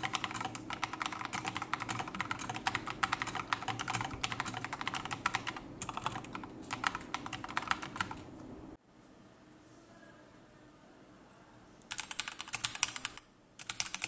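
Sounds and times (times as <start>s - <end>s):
typing on mechanical keyboard: 0.0s - 8.2s, 11.9s - 14.0s.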